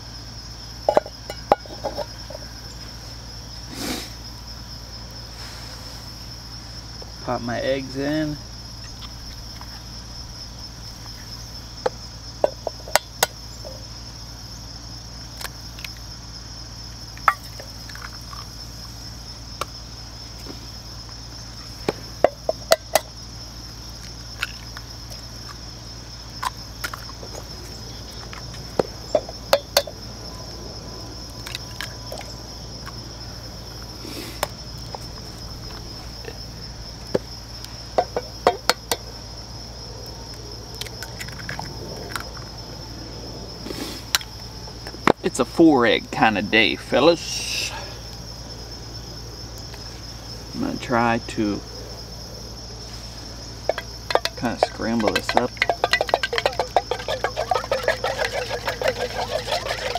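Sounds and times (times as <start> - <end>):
crickets chirring: 0.0 - 59.9
eggs cracked against a pan: 53.7 - 59.9.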